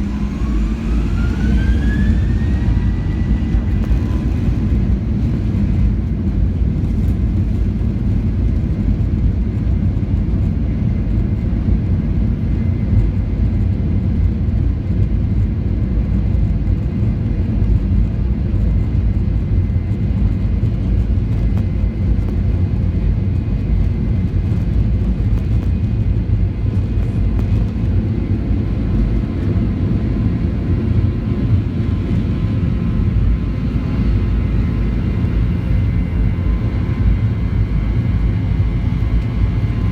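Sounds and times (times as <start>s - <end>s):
airplane cabin drone: 0.0s - 39.9s.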